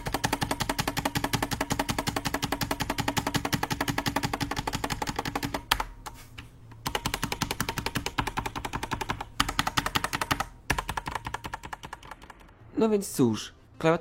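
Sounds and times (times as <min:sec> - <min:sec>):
mechanical keyboard typing: 0:00.0 - 0:05.9, 0:06.8 - 0:12.6.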